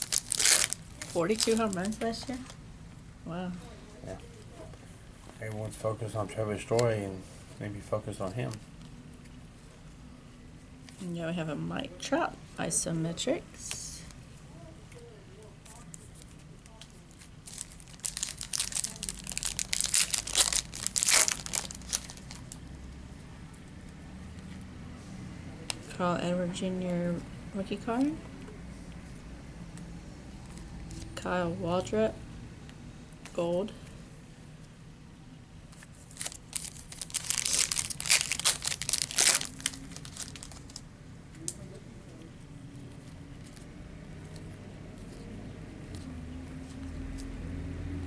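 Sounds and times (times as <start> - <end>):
plastic wrapper crinkling: 0.0 - 2.6, 15.6 - 22.7, 35.7 - 40.9.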